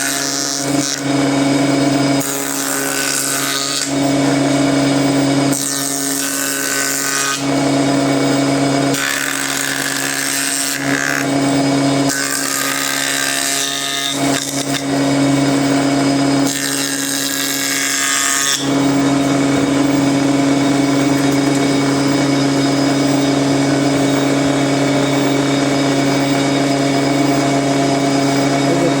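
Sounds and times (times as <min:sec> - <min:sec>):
power tool motor hum: 0:00.0 - 0:29.0.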